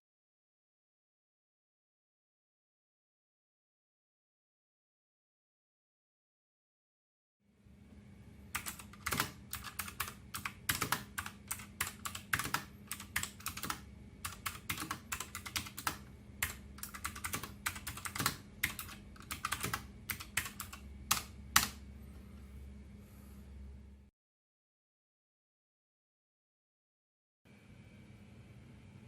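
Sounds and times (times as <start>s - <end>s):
mechanical keyboard typing: 8.6s - 21.8s.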